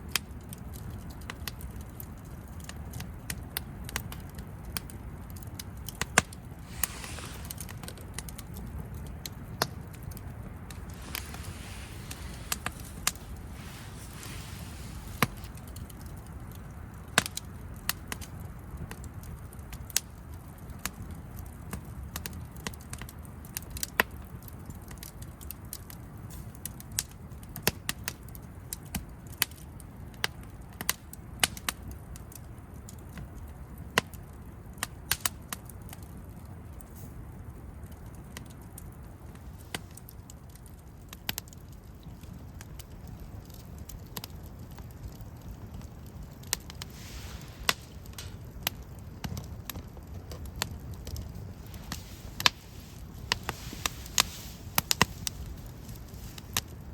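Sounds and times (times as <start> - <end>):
campfire crackling and popping: 0.0 - 56.9
low steady rumble: 5.8 - 18.0, 44.6 - 56.9
faint hiss: 6.2 - 17.0, 46.6 - 48.8, 50.5 - 56.9.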